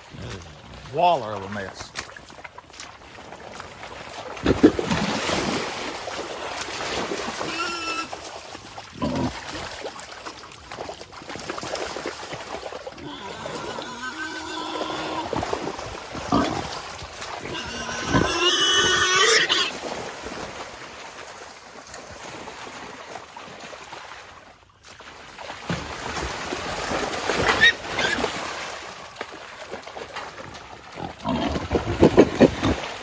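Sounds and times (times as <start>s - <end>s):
hogs squealing and grunting: 13.0s - 15.4s, 17.4s - 19.7s.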